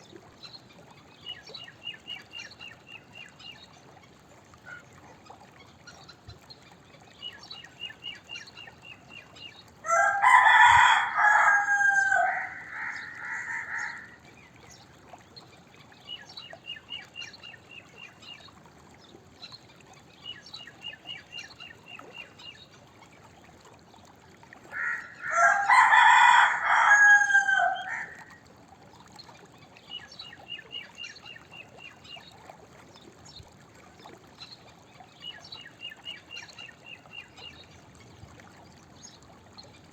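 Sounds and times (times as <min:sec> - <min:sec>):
rooster crowing: 0:09.8 - 0:14.2, 0:24.8 - 0:28.2.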